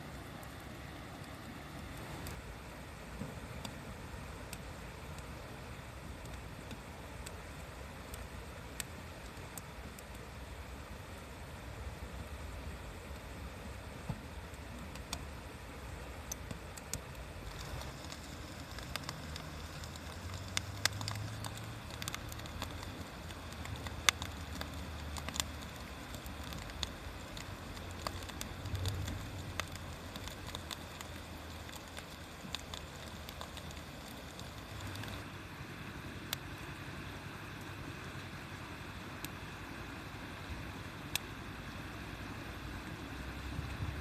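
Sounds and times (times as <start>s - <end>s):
bonfire crackling and popping: 0.0s - 44.0s.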